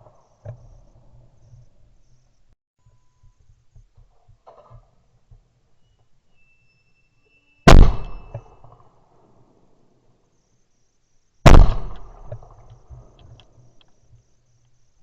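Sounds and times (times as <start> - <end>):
shotgun shot echoing: 7.7 - 8.8, 11.5 - 12.7.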